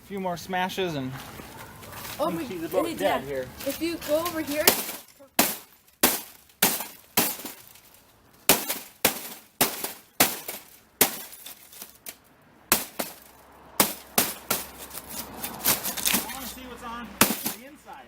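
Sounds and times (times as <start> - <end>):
breaking glass clatter: 4.6 - 7.9, 8.5 - 15.0, 17.2 - 17.7
sharp strikes on glass: 4.7 - 7.6, 8.5 - 11.9, 12.7 - 14.9, 17.2 - 17.7.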